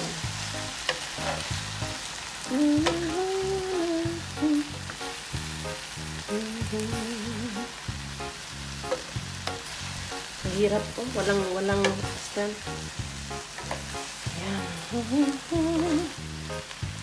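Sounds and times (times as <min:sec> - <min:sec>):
food sizzling in a frying pan: 0:00.0 - 0:17.0
utensil clicking against pan: 0:08.8 - 0:09.6, 0:13.6 - 0:14.0.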